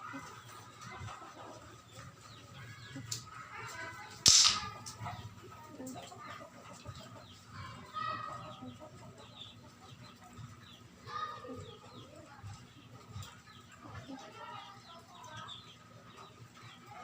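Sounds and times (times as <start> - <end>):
sharp loud crack: 4.2 - 4.8.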